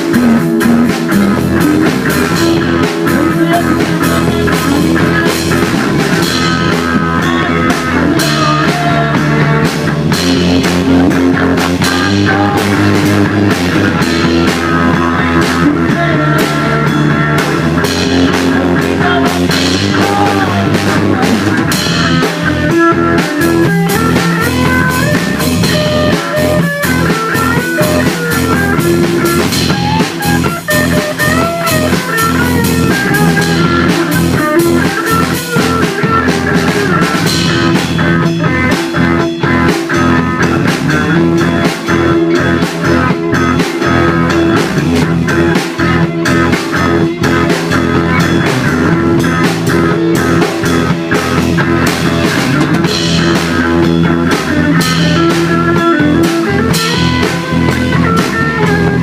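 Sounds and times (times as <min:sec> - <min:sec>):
bending melody line: 0:00.0 - 0:59.0
rock music with guitar and drums: 0:00.0 - 0:59.0.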